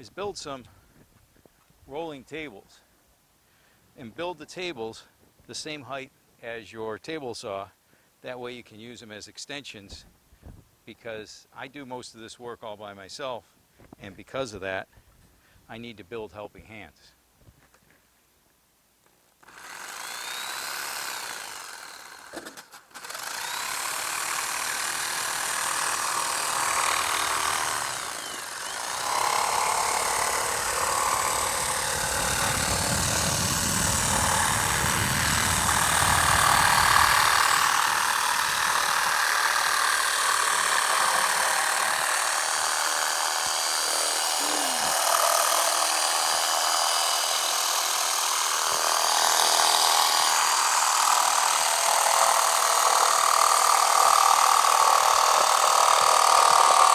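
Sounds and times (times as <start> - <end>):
table saw cutting: 19.4 - 56.9.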